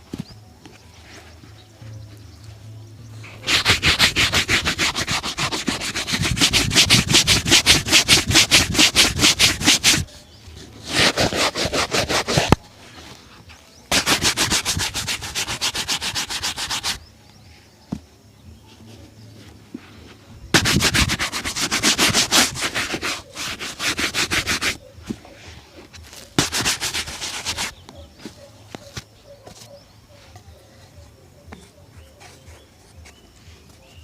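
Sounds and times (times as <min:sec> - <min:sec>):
shoe being buffed: 0:03.4 - 0:10.1, 0:10.7 - 0:12.6, 0:13.9 - 0:17.0, 0:20.5 - 0:25.3, 0:25.9 - 0:29.8.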